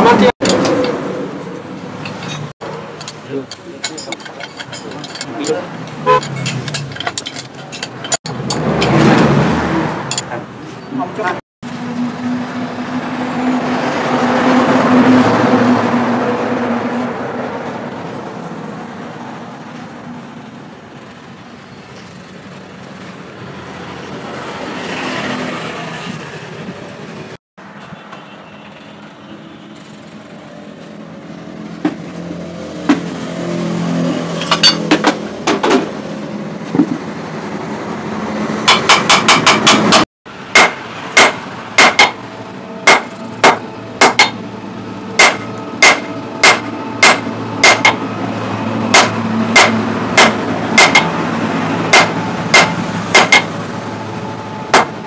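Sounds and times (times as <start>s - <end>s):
hammer striking steel: 34.4s - 35.2s, 38.7s - 44.5s, 45.2s - 48.1s, 48.9s - 51.2s, 51.9s - 53.5s, 54.7s - 55.0s.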